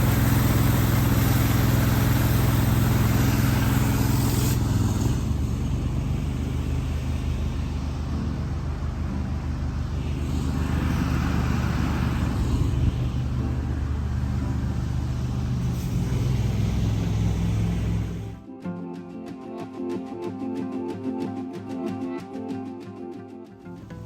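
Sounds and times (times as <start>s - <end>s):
high-pressure spray hiss: 0.0s - 8.0s, 8.6s - 18.3s
pressure washer engine humming: 0.0s - 18.4s.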